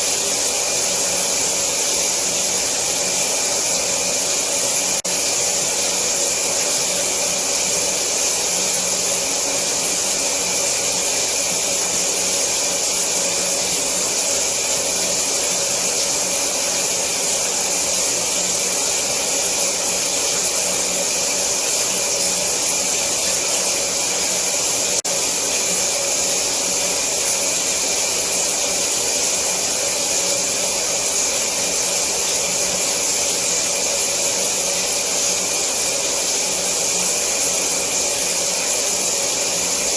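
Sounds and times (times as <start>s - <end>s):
shower water spraying: 0.0s - 39.9s.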